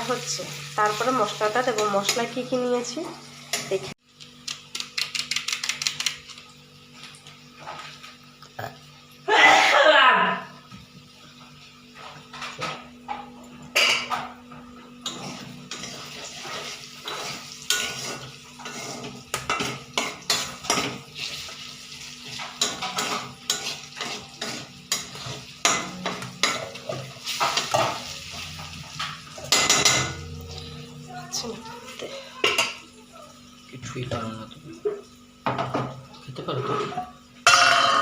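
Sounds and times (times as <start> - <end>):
metal utensils clinking: 15.0 - 21.0, 22.2 - 32.8.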